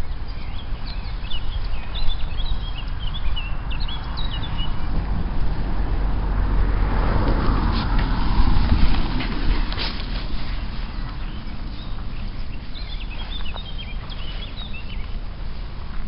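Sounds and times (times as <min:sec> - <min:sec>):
songbirds chirping: 0:00.0 - 0:16.0
steady low rumble: 0:00.0 - 0:16.0
rushing noise: 0:03.5 - 0:16.0.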